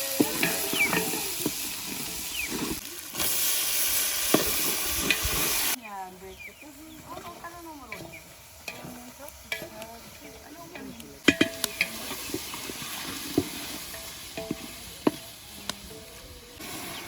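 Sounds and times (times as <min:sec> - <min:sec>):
food sizzling: 0:00.0 - 0:17.0
spoon knocking and scraping pot: 0:00.2 - 0:02.8, 0:07.1 - 0:16.0.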